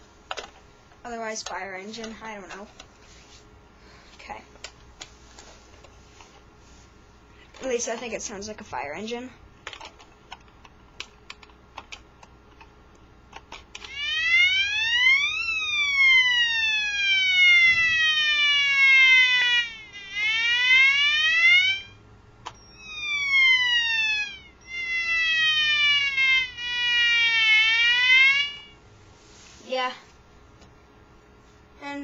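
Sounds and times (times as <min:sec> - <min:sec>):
buzzy electronic siren wail: 0:13.9 - 0:22.0, 0:22.6 - 0:28.8.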